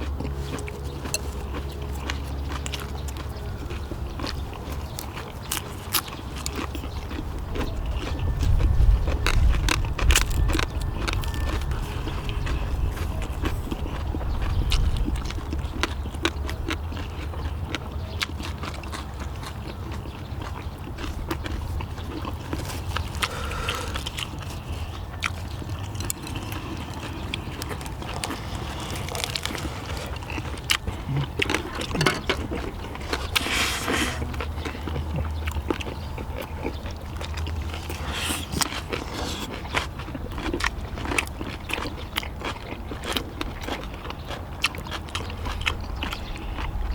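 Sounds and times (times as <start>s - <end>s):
people chewing food: 0.0s - 46.9s.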